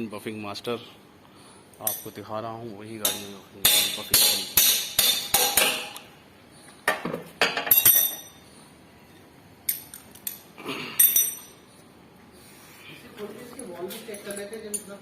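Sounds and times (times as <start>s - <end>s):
metal tools clinking: 7.5s - 8.4s, 9.7s - 11.8s, 13.8s - 15.0s.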